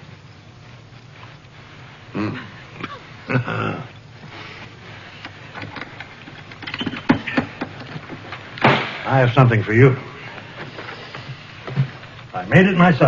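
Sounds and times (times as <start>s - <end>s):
steady low hum: 0.0s - 13.0s
person wordless vocal sounds: 2.1s - 2.6s.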